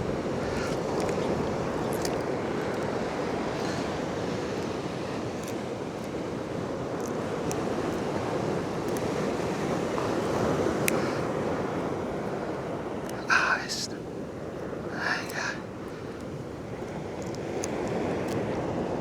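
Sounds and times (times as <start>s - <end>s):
wind noise: 0.0s - 6.1s
surf washing: 0.0s - 19.0s
faint clicks: 0.4s - 6.2s, 8.8s - 11.3s.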